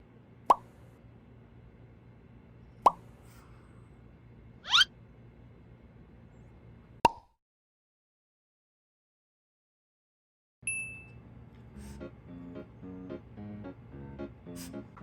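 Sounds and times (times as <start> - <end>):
cartoon pop sound effects: 7.0 - 7.4.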